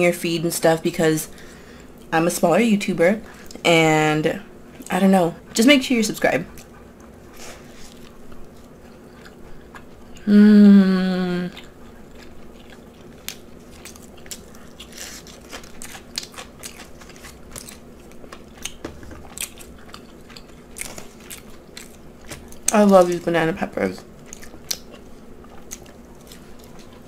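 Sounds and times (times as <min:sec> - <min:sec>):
crunchy chewing: 0:06.4 - 0:10.3, 0:11.5 - 0:23.1, 0:24.0 - 0:27.0.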